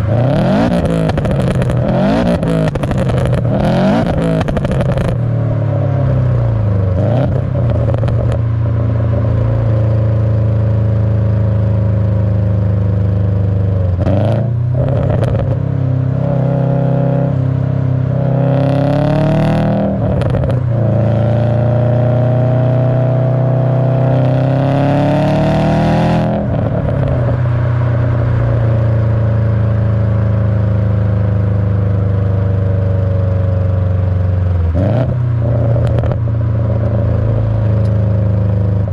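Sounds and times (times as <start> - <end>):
car engine accelerating: 0.0 - 38.9.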